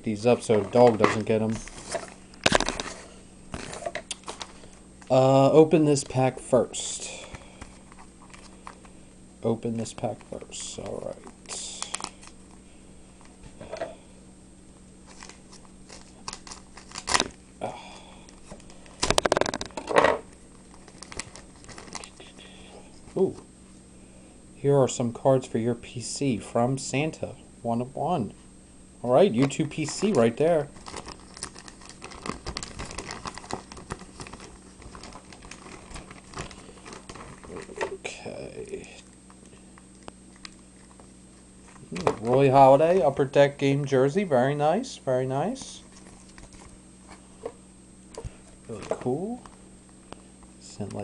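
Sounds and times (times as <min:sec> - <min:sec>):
cards and plastic packaging crinkling: 0:00.4 - 0:09.0, 0:09.7 - 0:12.6, 0:15.0 - 0:17.4, 0:18.0 - 0:22.3, 0:29.2 - 0:43.4, 0:45.5 - 0:47.6, 0:48.2 - 0:50.2
wrapper tearing and crinkling: 0:15.1 - 0:17.4, 0:18.5 - 0:19.8, 0:20.7 - 0:22.1, 0:29.8 - 0:37.8.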